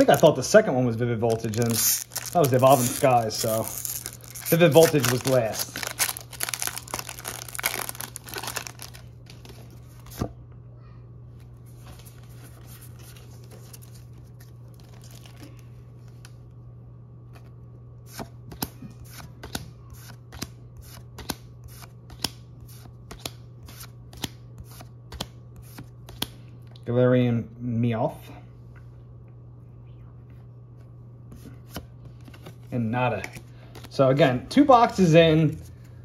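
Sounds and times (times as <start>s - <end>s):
foil wrapper crinkling and tearing: 0.0s - 0.4s, 1.2s - 9.5s
steady low hum: 0.0s - 36.0s
cards clicking and snapping: 25.1s - 26.4s.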